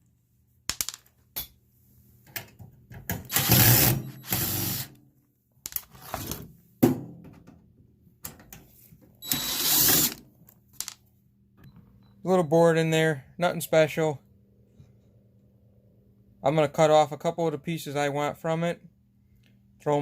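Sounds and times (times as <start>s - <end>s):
cordless drill running: 3.3s - 4.9s, 9.2s - 10.2s.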